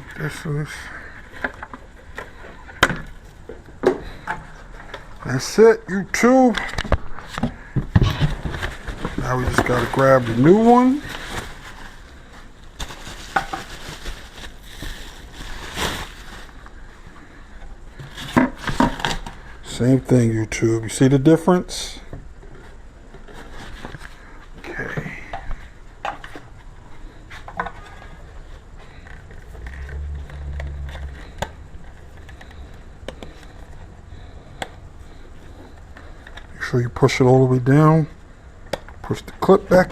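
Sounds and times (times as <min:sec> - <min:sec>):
plastic part rustling: 0:06.5 - 0:16.8, 0:27.3 - 0:33.9
low rumble: 0:29.5 - 0:32.6.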